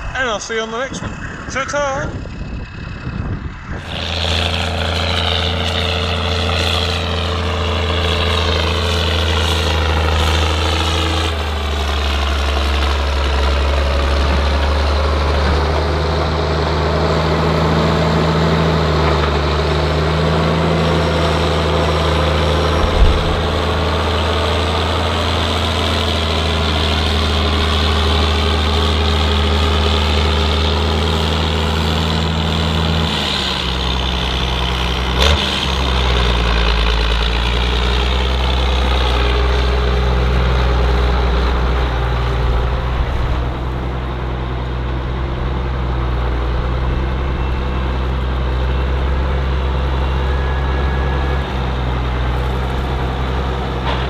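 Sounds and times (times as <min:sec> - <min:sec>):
tractor diesel engine running: 0:00.0 - 0:54.0
short knock: 0:22.7 - 0:24.0.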